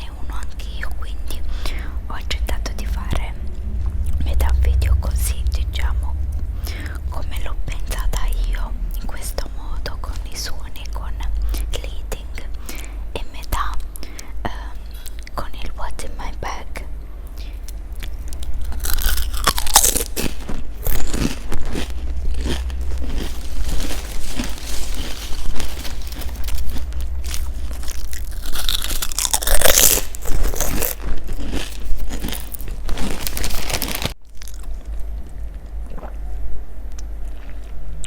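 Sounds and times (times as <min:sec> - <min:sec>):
steady low hum: 0:00.0 - 0:38.0
crunchy food being chewed: 0:17.4 - 0:38.0.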